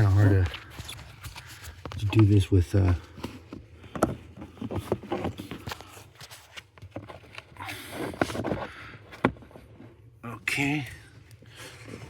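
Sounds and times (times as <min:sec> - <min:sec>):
wire rustling through rubber grommet: 0:00.0 - 0:08.7.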